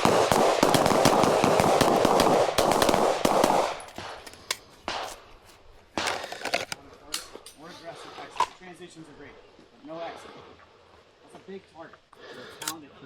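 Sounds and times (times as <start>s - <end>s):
rapid pistol fire: 0.0s - 4.3s.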